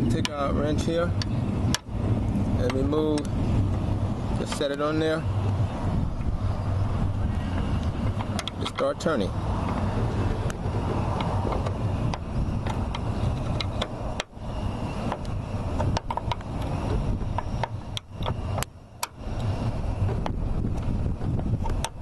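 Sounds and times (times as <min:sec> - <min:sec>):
steady low rumble: 0:00.0 - 0:22.0.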